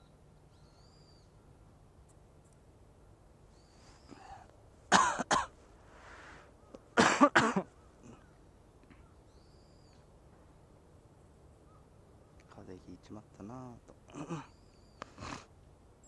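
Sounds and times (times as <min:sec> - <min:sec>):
person coughing: 0:04.9 - 0:05.5, 0:07.0 - 0:08.2.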